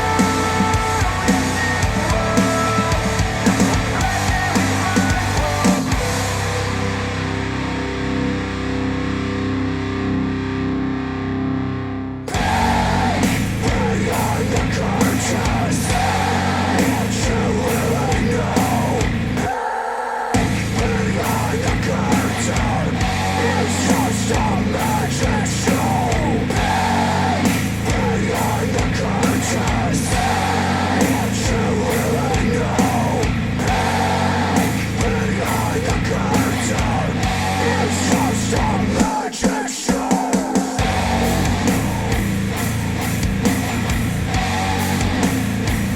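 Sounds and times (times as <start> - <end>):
distorted guitar: 0.0 - 19.5, 20.3 - 45.9
heavy rock music with vocals: 0.0 - 45.9.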